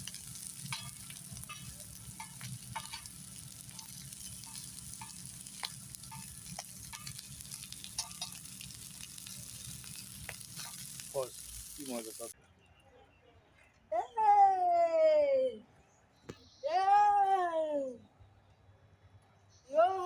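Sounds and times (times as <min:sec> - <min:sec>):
food sizzling in a pan: 0:00.0 - 0:12.4.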